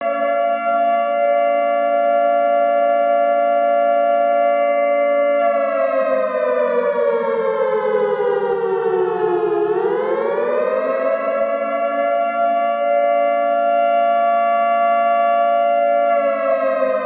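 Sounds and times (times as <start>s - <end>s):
air raid siren wailing: 0.0s - 17.0s.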